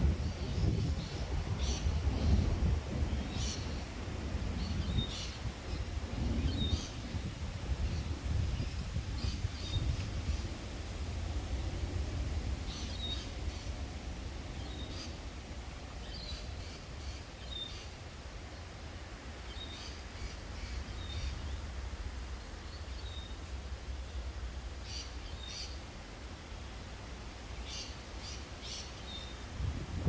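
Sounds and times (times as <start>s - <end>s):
steady low rumble: 0.0s - 16.1s.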